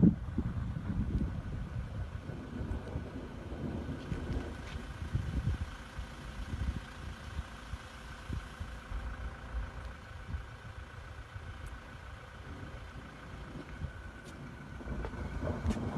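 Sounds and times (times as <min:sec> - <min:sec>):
wind buffeting microphone: 0:00.0 - 0:15.9.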